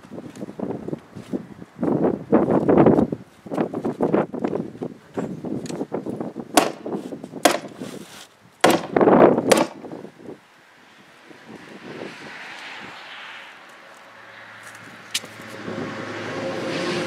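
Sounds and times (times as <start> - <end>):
roofing material rustling: 6.8 - 8.4.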